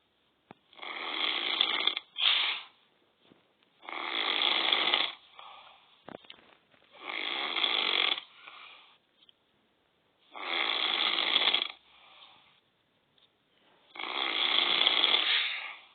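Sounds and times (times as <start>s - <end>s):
man snoring: 0.7s - 2.1s, 3.8s - 5.2s, 7.0s - 8.3s, 10.4s - 11.8s, 13.9s - 15.9s.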